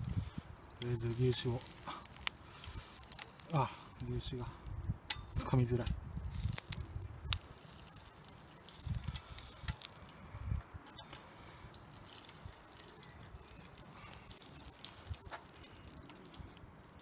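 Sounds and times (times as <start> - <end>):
fat crackling and popping: 0.0 - 17.0.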